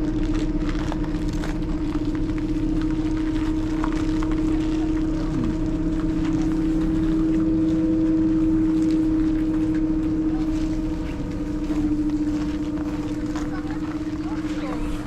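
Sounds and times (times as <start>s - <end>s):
cable car machinery humming: 0.0s - 15.0s.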